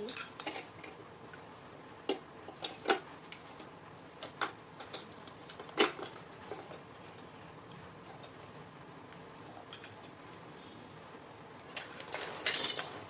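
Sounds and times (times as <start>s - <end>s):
plastic toy pieces clicking: 12.0s - 12.9s.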